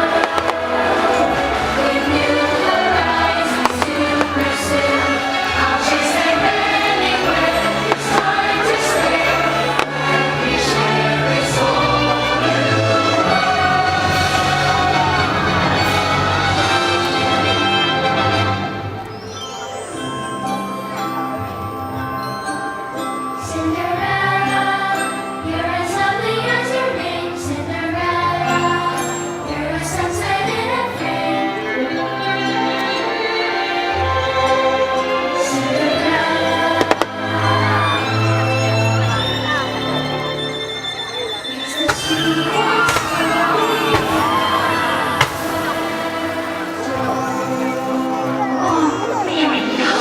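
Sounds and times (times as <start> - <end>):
firework bangs: 0.0 - 1.2, 3.0 - 10.9, 41.8 - 48.2
choral and orchestral music: 0.0 - 50.0.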